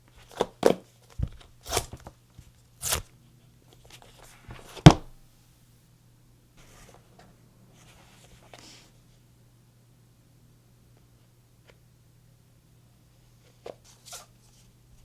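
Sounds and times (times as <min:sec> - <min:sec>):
paper packaging tearing: 0:01.6 - 0:02.0, 0:02.8 - 0:03.1.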